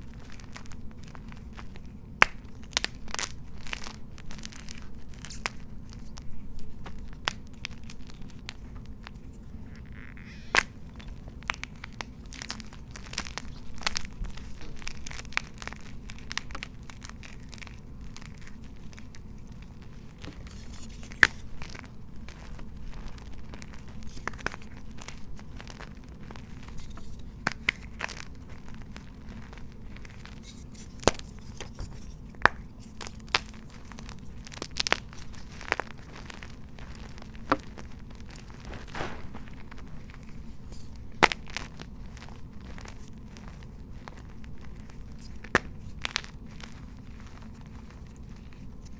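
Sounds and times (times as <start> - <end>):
steady low hum: 0.0 - 48.9
chalk crushing crunches: 10.3 - 48.9.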